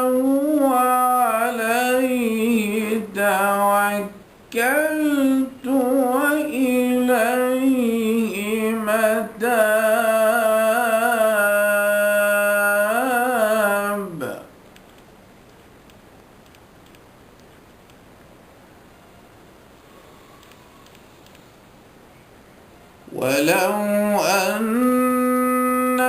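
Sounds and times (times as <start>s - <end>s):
man chanting melodically: 0.0s - 14.5s, 23.1s - 26.0s.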